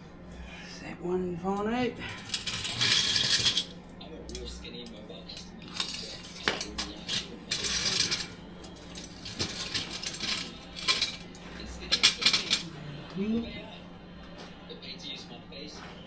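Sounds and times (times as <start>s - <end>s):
steady low hum: 0.0s - 16.0s
metal tools clinking: 2.2s - 4.5s, 5.3s - 12.8s.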